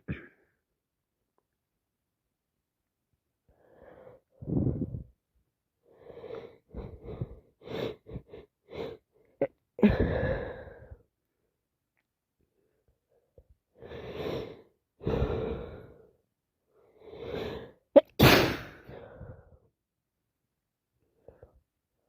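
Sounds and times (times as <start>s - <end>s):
loud sneeze: 18.0s - 18.9s.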